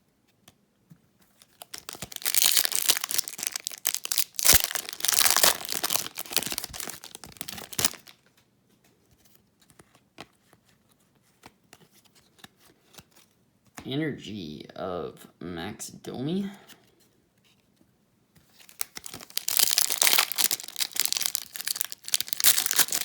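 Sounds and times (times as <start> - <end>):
cards being handled: 1.2 - 13.8, 18.4 - 23.0
foil wrapper tearing and crinkling: 1.5 - 8.1, 18.6 - 23.0.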